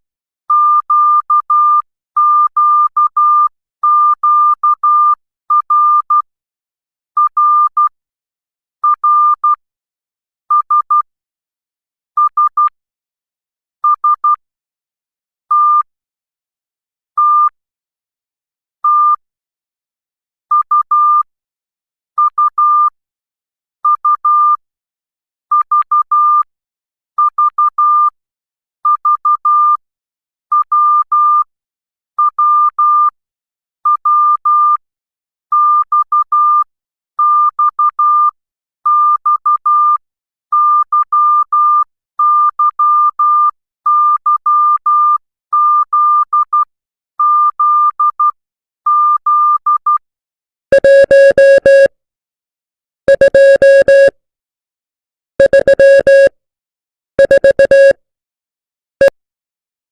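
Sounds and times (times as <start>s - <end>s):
morse code beeps: 50.7s - 51.9s, 53.1s - 54.2s, 55.4s - 56.4s, 57.2s - 58.0s.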